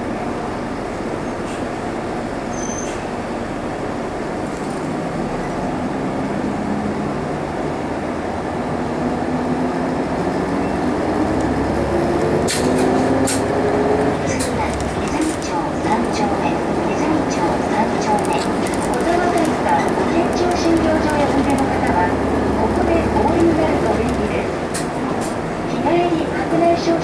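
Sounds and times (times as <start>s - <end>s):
bus engine and road noise: 0.0s - 27.0s
sharp rattling clicks: 17.3s - 22.0s.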